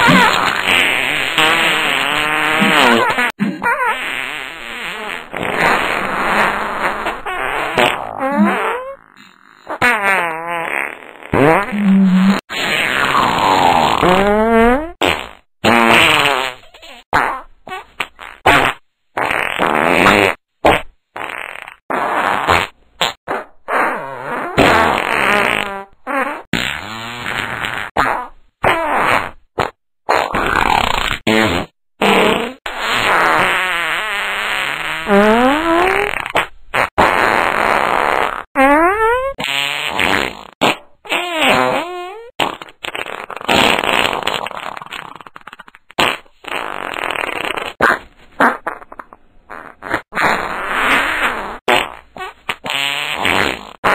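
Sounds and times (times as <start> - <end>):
fart sounds: 0.0 - 53.9.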